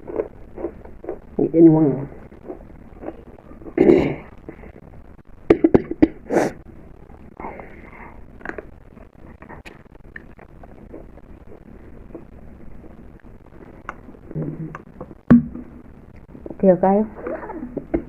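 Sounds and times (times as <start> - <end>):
person coughing: 3.8 - 4.3.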